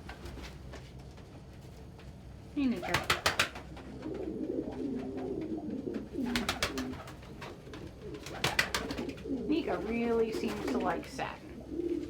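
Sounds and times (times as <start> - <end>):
pigeons cooing: 2.8 - 12.0.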